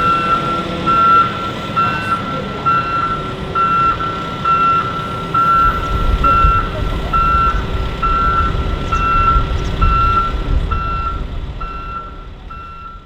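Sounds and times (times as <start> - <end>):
diesel engine running: 0.0 - 13.0
reversing alarm beeping: 0.0 - 13.0.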